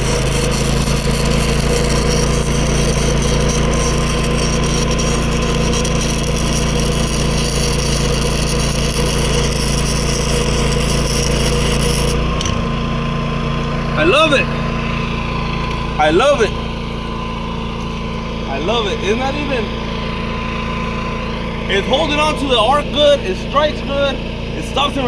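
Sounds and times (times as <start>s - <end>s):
welding arc crackling and hissing: 0.0s - 12.7s
generator engine running: 0.0s - 25.0s.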